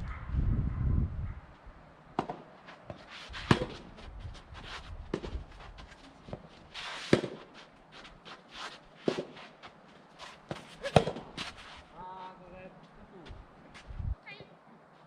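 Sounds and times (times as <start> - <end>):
light ticks and scuffs: 2.6 - 14.0.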